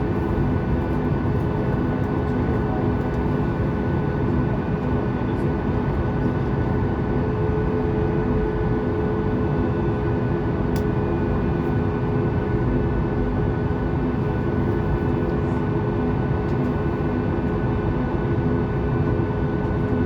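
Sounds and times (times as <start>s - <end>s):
jet engine rumble and whine: 0.0s - 20.0s.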